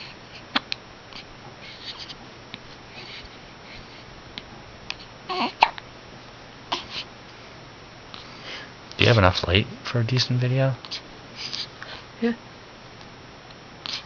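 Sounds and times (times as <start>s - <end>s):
baby hiccuping: 4.9s - 5.8s
soft baby noises: 4.9s - 5.8s.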